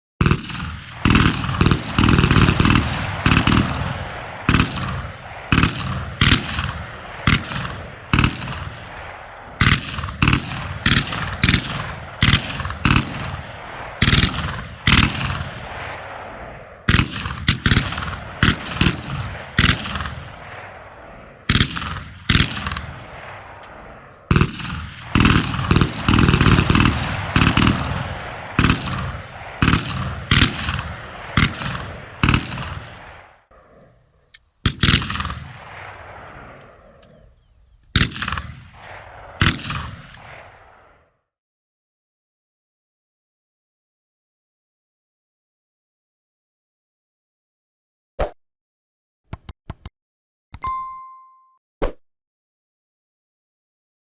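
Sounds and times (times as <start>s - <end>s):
machine gun firing bursts: 0.2s - 8.8s, 24.3s - 32.8s
scattered gunshots: 0.2s - 33.2s, 37.9s - 40.5s.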